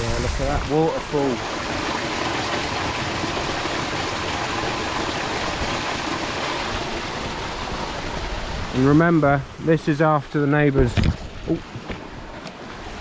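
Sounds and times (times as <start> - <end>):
water pouring over stones: 0.0 - 8.1.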